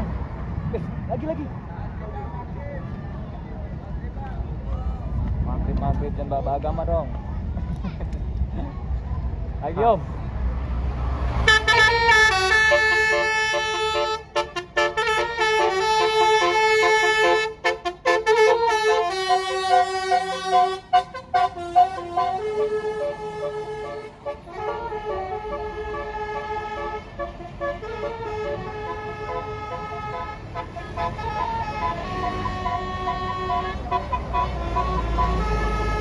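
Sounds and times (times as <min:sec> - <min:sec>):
bus musical air horn tune: 0:11.4 - 0:36.0.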